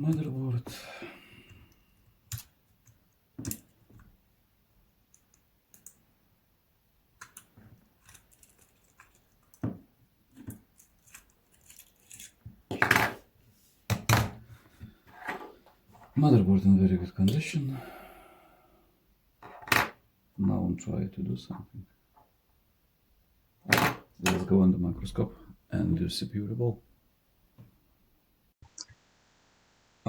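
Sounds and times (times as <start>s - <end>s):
small tools clicking and knocking: 2.3s - 4.0s, 7.2s - 9.7s, 10.3s - 13.2s.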